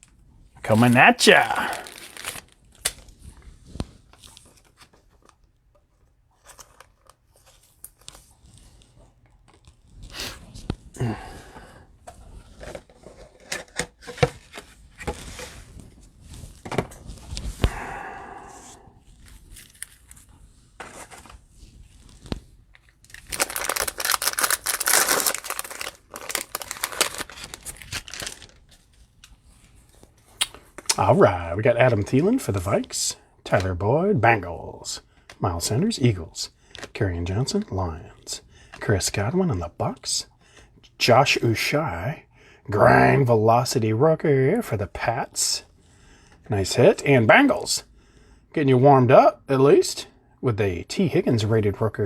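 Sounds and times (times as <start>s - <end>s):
plastic wrapper crinkling: 0.6s - 3.2s, 19.2s - 20.3s, 22.0s - 29.3s.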